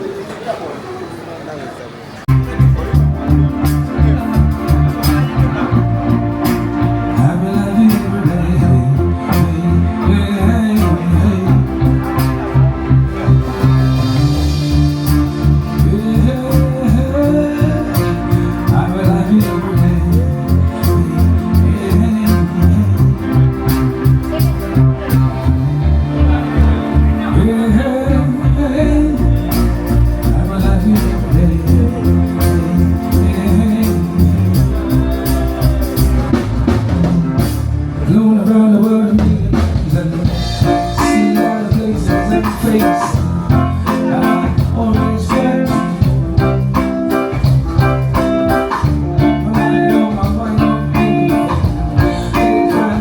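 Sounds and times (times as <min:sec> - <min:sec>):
amplified rock band with singing: 0:02.4 - 0:53.0.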